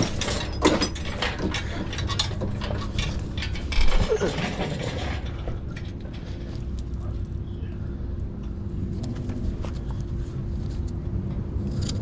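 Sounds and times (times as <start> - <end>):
hand tools ratcheting on metal: 0.0 - 6.4
steady low hum: 0.0 - 12.0.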